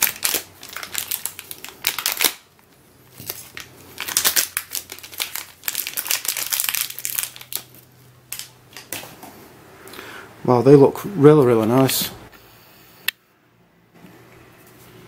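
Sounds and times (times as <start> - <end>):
plastic packaging crinkling: 0.0 - 9.1.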